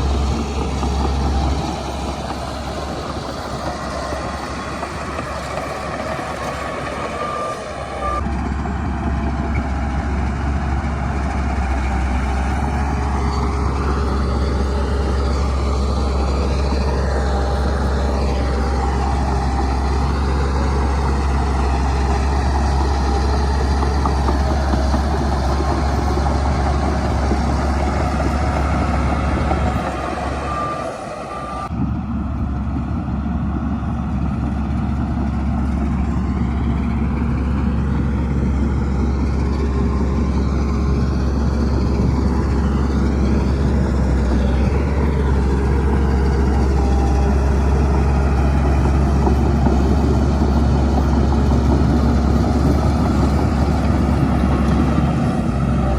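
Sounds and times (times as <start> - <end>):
heavy diesel engine rumbling: 0.0 - 55.9.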